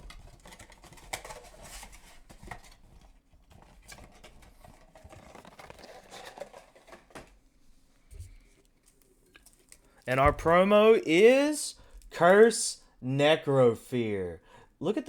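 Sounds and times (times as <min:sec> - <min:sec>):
packaging rustling: 0:00.0 - 0:07.4, 0:08.1 - 0:10.6.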